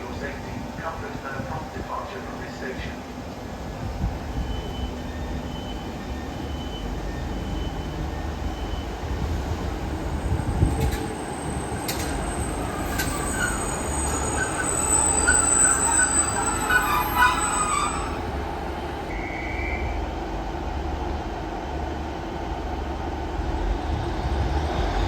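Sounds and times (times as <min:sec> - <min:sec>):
train rumbling: 0:00.0 - 0:25.0
wheel squeal: 0:10.8 - 0:18.4.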